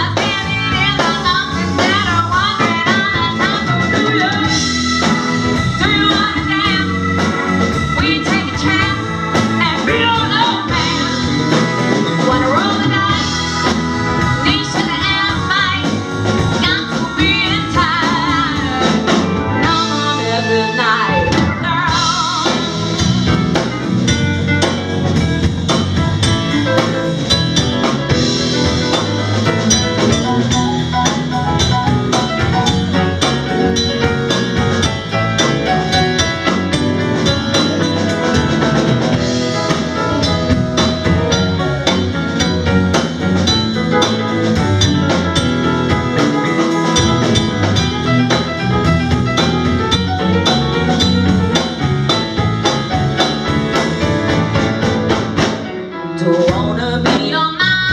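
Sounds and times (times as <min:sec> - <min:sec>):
drum kit: 0:00.0 - 0:57.9
electric guitar: 0:00.0 - 0:57.9
person singing: 0:56.2 - 0:57.9.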